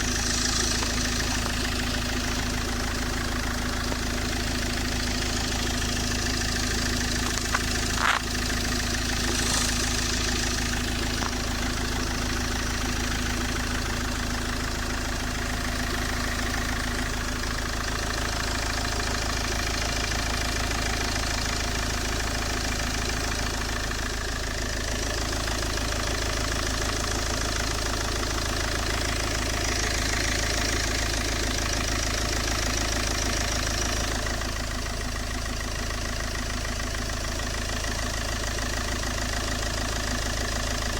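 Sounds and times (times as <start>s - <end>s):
diesel engine idling: 0.0s - 40.9s.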